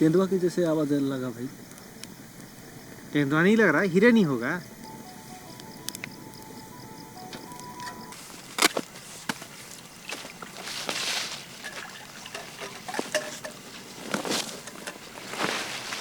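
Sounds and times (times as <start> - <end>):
rustling: 7.8 - 16.0
objects knocking and clicking: 11.6 - 15.1.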